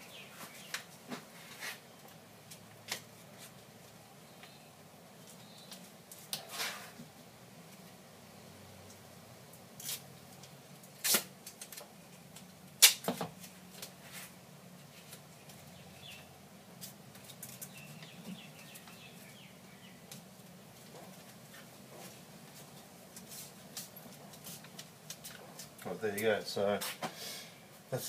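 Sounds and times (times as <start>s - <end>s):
sandpaper and tape rustling: 0.3s - 1.8s, 6.2s - 7.0s, 13.9s - 14.4s.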